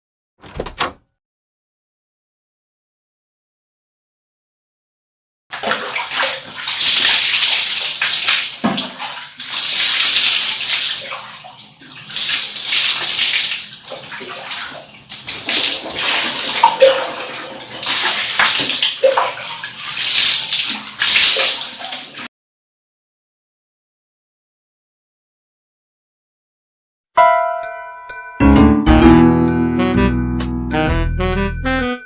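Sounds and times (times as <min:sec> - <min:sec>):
water splashing and pouring: 0:05.5 - 0:22.3.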